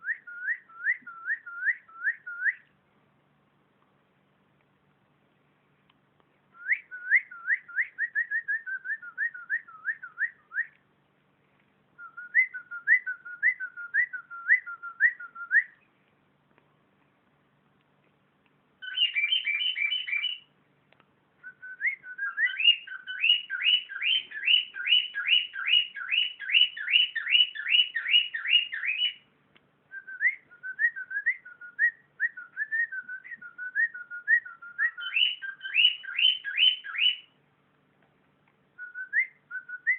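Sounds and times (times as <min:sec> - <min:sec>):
cockatiel whistling: 0:00.0 - 0:02.7, 0:06.6 - 0:10.8, 0:12.0 - 0:15.8, 0:18.8 - 0:20.5, 0:21.4 - 0:29.2, 0:29.9 - 0:37.3, 0:38.8 - 0:39.9.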